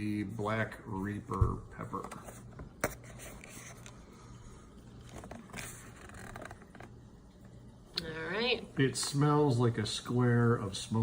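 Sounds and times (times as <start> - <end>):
packaging rustling: 4.9 - 7.0.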